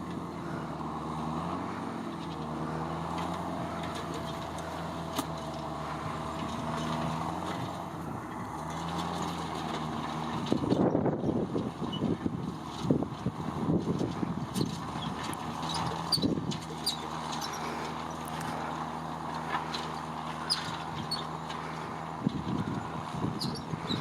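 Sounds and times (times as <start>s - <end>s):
tractor engine running: 0.0s - 24.0s
wind buffeting microphone: 10.1s - 16.8s, 20.4s - 24.0s.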